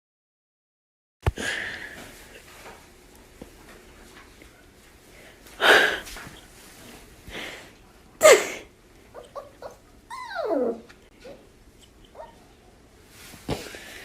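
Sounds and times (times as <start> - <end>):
dog whimpering and yipping: 9.1 - 11.5, 12.1 - 12.4
dog whining: 9.1 - 12.5.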